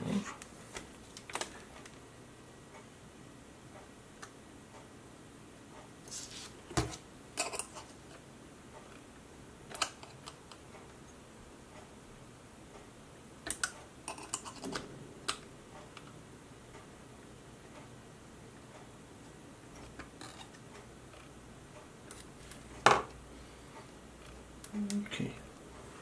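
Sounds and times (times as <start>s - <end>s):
small parts and tools clicking: 13.4s - 15.4s, 19.7s - 21.3s.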